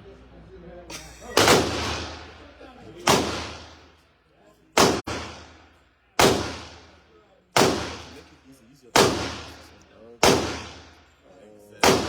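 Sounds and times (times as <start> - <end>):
pistol shots with echo: 1.3 - 4.0, 4.8 - 7.0, 7.6 - 11.1, 11.8 - 12.0.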